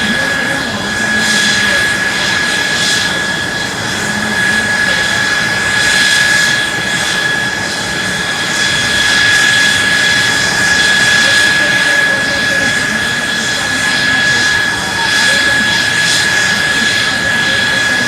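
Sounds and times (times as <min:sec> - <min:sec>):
jet engine high whine and rush: 0:00.0 - 0:18.0.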